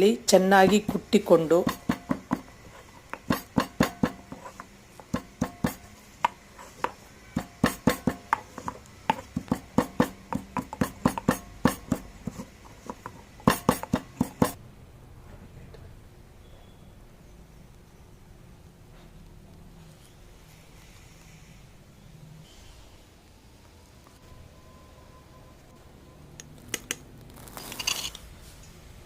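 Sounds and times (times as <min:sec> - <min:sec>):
pestle pounding in a mortar: 0:00.6 - 0:14.6.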